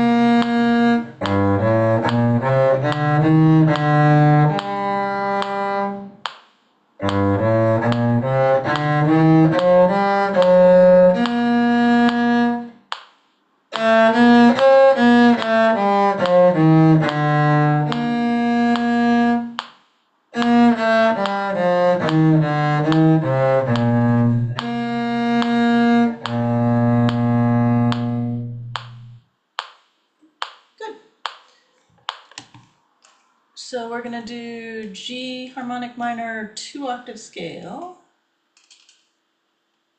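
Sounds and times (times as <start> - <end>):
bowed strings playing rhythmic tune: 0.0 - 6.4, 7.0 - 12.7, 13.7 - 19.7, 20.3 - 29.2.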